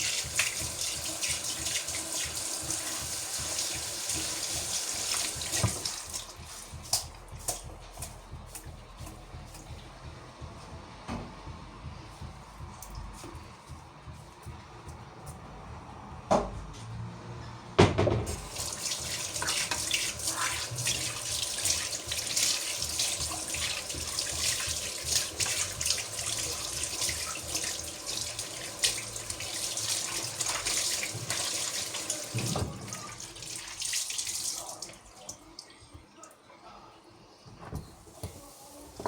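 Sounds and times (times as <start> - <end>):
water running and splashing: 0.0 - 8.7, 18.3 - 35.5.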